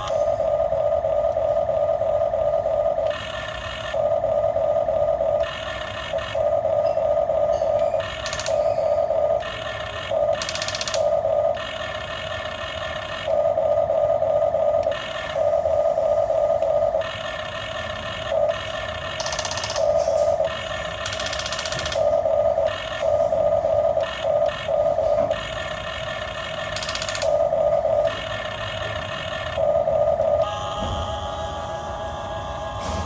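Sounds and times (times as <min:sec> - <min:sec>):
toy electric motors whining: 0:00.0 - 0:33.0.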